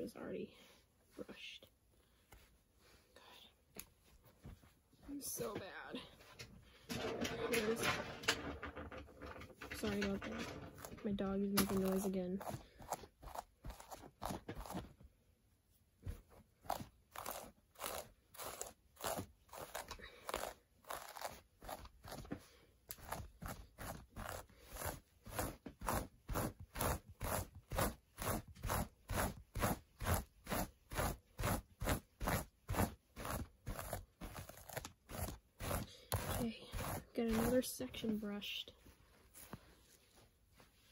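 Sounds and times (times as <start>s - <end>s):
brush scratching through hair: 10.8s - 15.0s, 16.2s - 40.9s.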